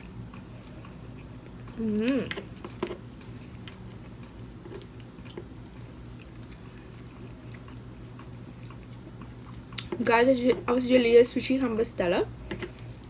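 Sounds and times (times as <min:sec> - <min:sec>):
person chewing: 0:00.0 - 0:10.0.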